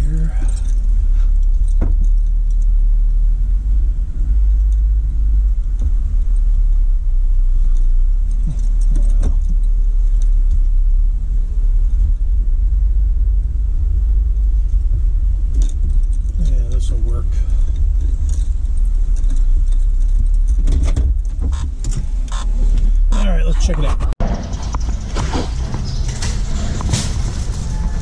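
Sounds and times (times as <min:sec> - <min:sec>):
light rattles and clicks: 0:00.0 - 0:02.8, 0:04.0 - 0:10.9, 0:14.6 - 0:28.0
road rumble inside car: 0:00.0 - 0:28.0.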